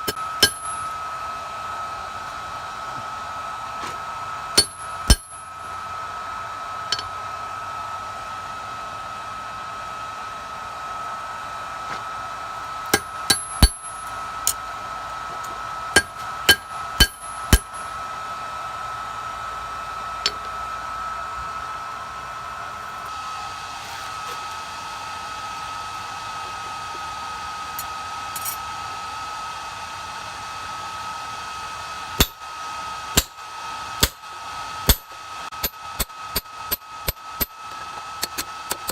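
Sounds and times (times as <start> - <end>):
hammer striking steel on anvil: 0.0 - 1.0, 4.6 - 5.5, 6.9 - 7.1, 12.9 - 14.6, 16.0 - 17.9, 20.2 - 20.6, 32.2 - 32.4, 33.2 - 33.4, 34.0 - 34.2, 34.9 - 37.6
forge blower whining: 0.0 - 38.9.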